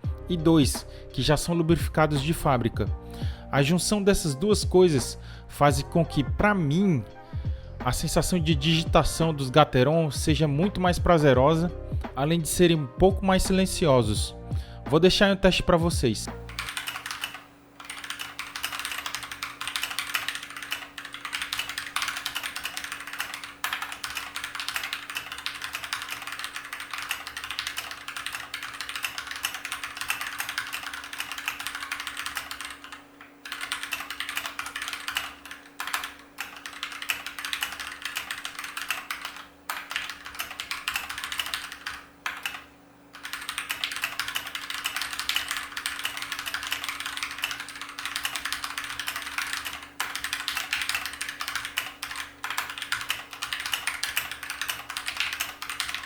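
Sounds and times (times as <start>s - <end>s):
mechanical keyboard typing: 16.3s - 56.0s.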